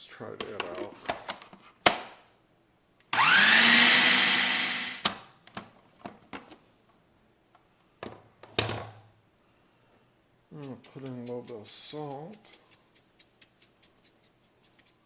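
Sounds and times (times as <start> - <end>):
blender motor spinning up: 3.2 - 5.0.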